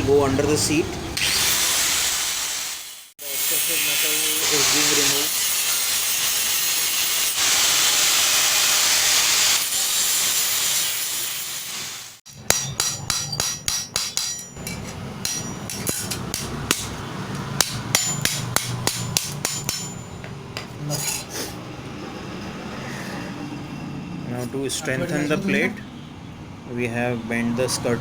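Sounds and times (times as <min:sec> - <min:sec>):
hammer striking sheet steel: 0:12.3 - 0:20.7.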